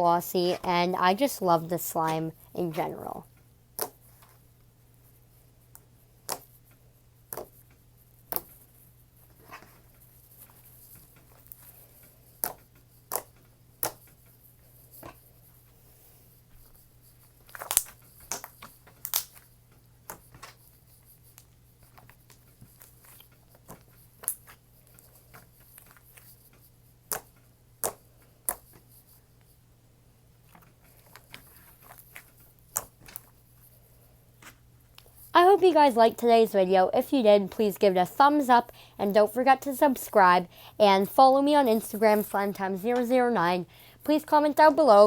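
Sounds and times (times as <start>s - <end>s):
slime squishing with clicks and pops: 12.4s - 14.1s, 17.5s - 19.4s, 27.0s - 28.7s.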